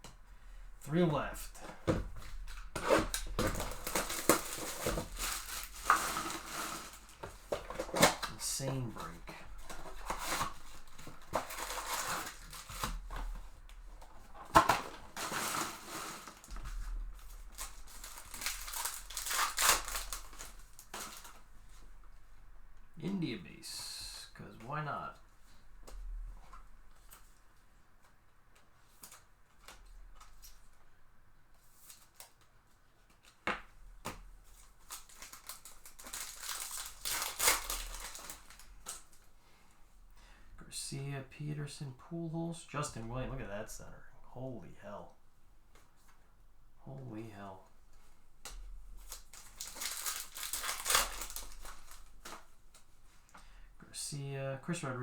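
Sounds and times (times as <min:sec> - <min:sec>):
packaging crinkling and rustling: 0:01.5 - 0:22.2, 0:34.0 - 0:39.3, 0:48.4 - 0:53.4
foil wrapper crackles: 0:02.3 - 0:13.2, 0:14.5 - 0:21.4, 0:34.6 - 0:39.3, 0:48.9 - 0:52.8.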